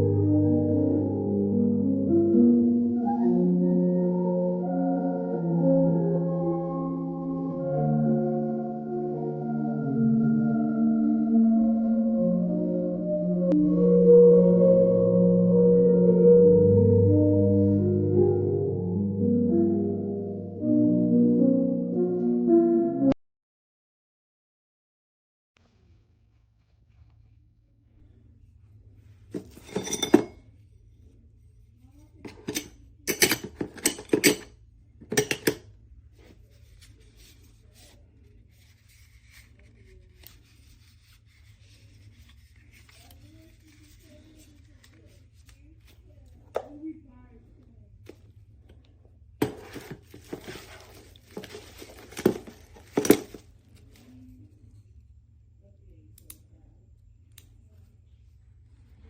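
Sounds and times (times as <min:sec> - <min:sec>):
faint low hum: 0:25.6 - 0:59.0
rustling and crinkling handling: 0:36.1 - 0:46.5, 0:49.4 - 0:54.6.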